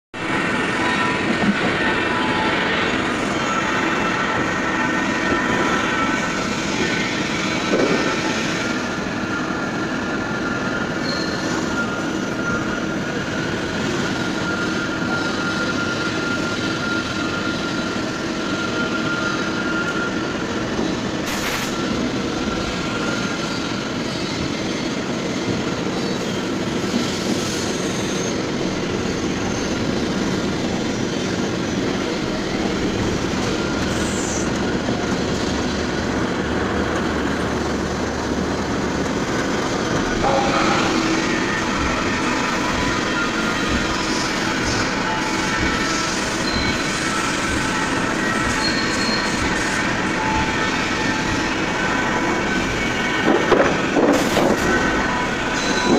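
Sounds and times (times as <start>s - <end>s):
high thin whine: 40.2s - 44.0s.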